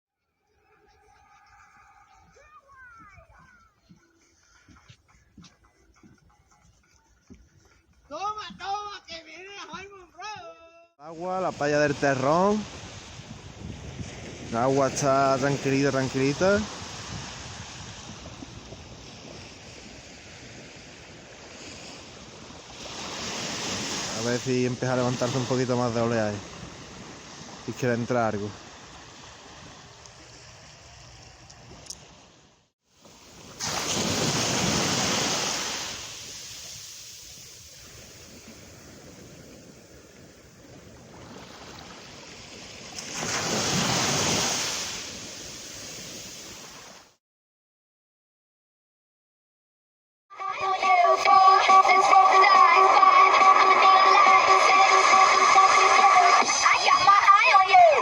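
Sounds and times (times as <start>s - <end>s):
gentle waves on a beach: 11.1s - 47.2s, 50.4s - 58.0s
wind buffeting microphone: 11.5s - 24.2s, 26.3s - 27.8s, 28.4s - 32.2s, 33.3s - 46.8s.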